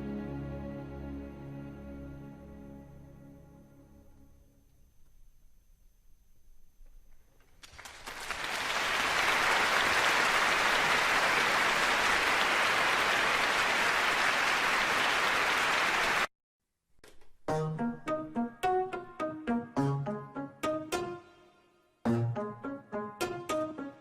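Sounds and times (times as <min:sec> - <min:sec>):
many hands clapping: 0:07.5 - 0:16.3.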